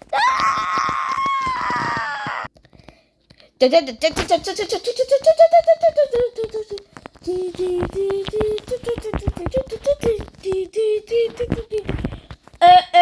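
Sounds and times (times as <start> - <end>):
sharp clicks and taps: 5.2 - 12.6.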